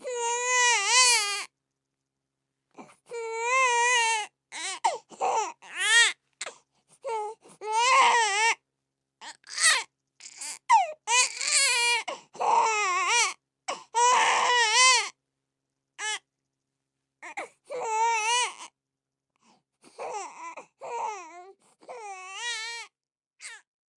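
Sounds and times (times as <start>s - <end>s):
newborn baby crying: 0.0s - 1.5s, 2.8s - 8.6s, 9.2s - 15.2s, 16.0s - 16.2s, 17.2s - 18.8s, 19.9s - 23.7s.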